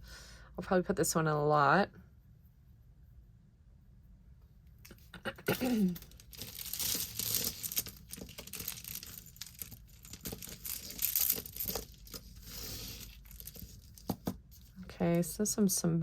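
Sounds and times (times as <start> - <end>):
packaging crinkling and rustling: 5.6 - 14.8
jewelry pieces clicking: 5.7 - 14.3.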